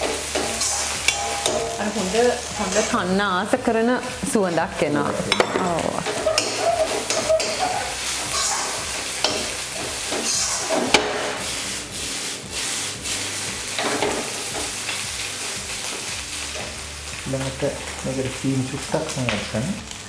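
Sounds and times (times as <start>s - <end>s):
utensil scraping a pan: 0.0s - 3.1s, 4.3s - 16.8s
chicken sizzling in a pan: 0.0s - 20.0s.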